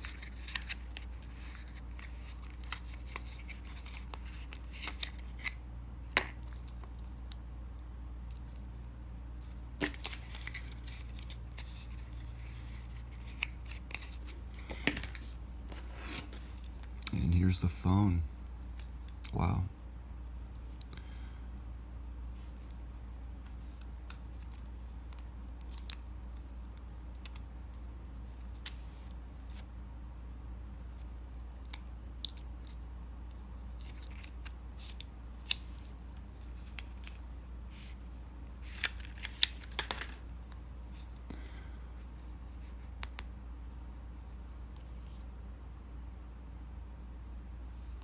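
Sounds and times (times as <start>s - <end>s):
steady low hum: 0.0s - 33.8s, 40.2s - 48.0s
phone packaging handling clicks: 38.7s - 40.6s.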